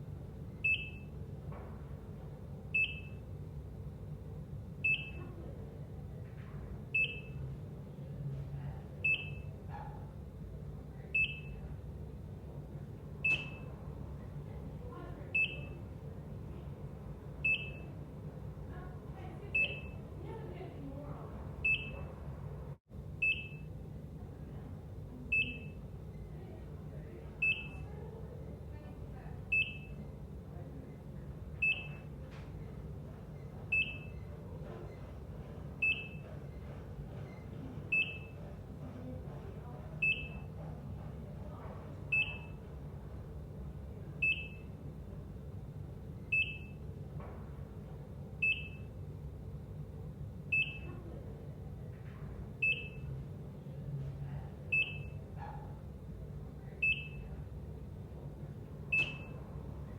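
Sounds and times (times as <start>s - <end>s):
steady low hum: 0.0s - 59.9s
heart monitor beeping: 0.6s - 1.2s, 2.7s - 3.3s, 4.8s - 5.3s, 6.9s - 7.5s, 9.0s - 9.6s, 11.2s - 11.6s, 13.2s - 13.8s, 15.3s - 15.9s, 17.4s - 18.0s, 19.5s - 20.1s, 21.6s - 22.1s, 23.2s - 23.7s, 25.3s - 25.9s, 27.4s - 27.9s, 29.5s - 30.2s, 31.6s - 38.6s, 40.0s - 42.8s, 44.2s - 44.8s, 46.2s - 46.8s, 48.4s - 49.0s, 50.5s - 51.0s, 52.6s - 53.2s, 54.7s - 55.8s, 56.8s - 57.4s, 58.9s - 59.4s.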